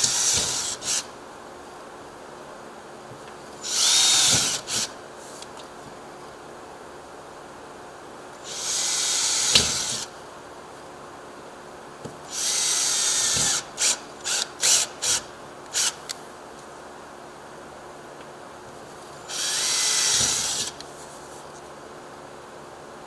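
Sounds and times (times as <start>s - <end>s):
power drill drilling: 0.0s - 1.0s, 3.6s - 4.9s, 8.5s - 10.1s, 12.3s - 16.0s, 19.3s - 20.8s.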